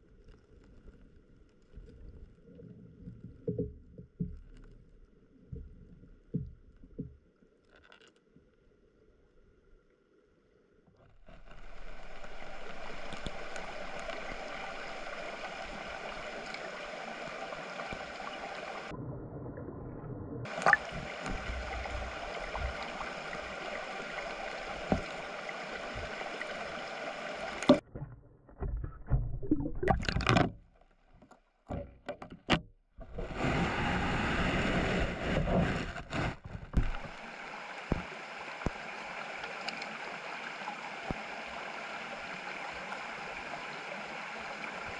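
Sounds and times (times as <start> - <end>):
water splashes: 11.0 - 30.6, 33.1 - 44.9
stream rushing and gurgling: 11.2 - 19.0, 20.4 - 27.8, 36.8 - 44.9.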